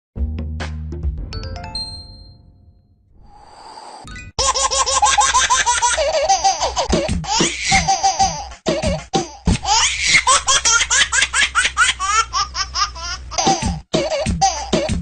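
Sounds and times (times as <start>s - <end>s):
chime notes: 1.4s - 3.0s
baby laughing: 4.4s - 15.0s.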